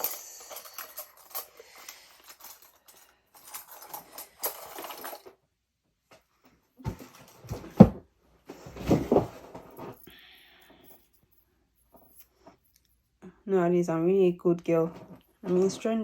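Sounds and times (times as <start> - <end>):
rustling: 0.0 - 5.4, 6.8 - 12.9.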